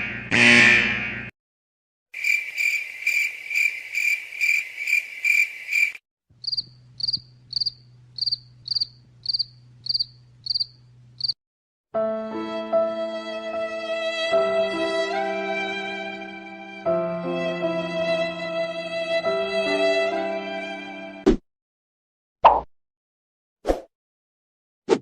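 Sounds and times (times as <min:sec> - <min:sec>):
crickets chirping: 0:02.2 - 0:11.4
low steady hum: 0:06.6 - 0:11.2
music with held string tones: 0:12.0 - 0:21.2.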